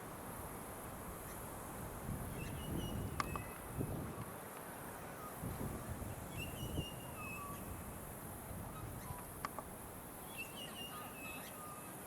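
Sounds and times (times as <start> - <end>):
bird whistling: 10.3 - 11.9.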